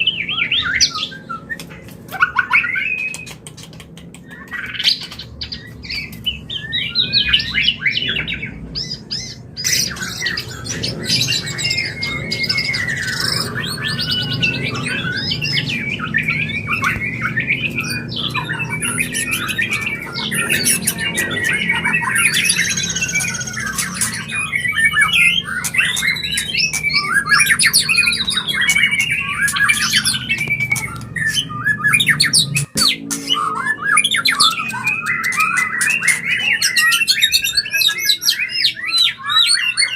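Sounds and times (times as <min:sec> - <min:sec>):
bird singing whistles and chatters: 0:00.0 - 0:39.9.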